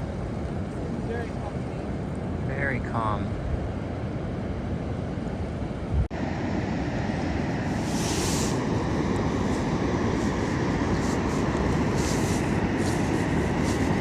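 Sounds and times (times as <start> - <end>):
ocean surf: 0.0 - 14.0
wind on microphone: 7.0 - 14.0
hiss of water: 7.1 - 14.0.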